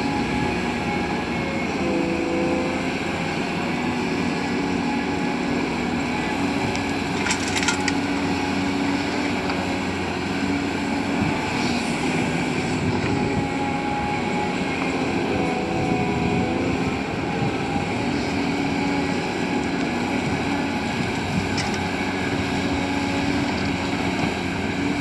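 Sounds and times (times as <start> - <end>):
excavator diesel engine running: 0.0 - 25.0
rattle of clanks: 6.8 - 8.0.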